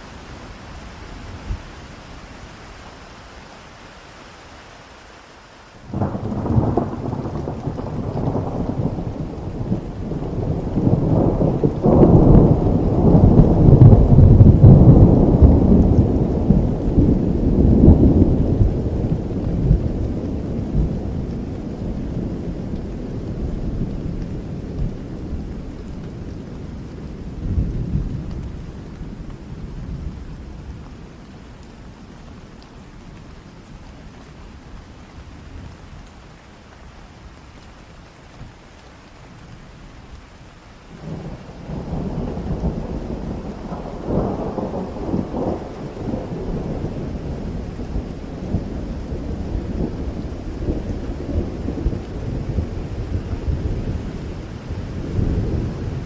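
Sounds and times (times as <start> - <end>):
steady rain: 0.0 - 56.0
thunder rumbling: 5.9 - 31.2, 40.9 - 56.0.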